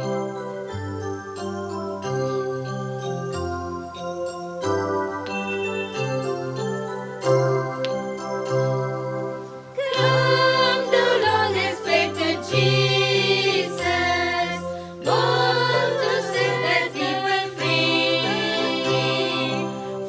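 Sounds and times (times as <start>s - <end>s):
instrumental accompaniment: 0.0s - 20.0s
choir singing: 9.8s - 20.0s.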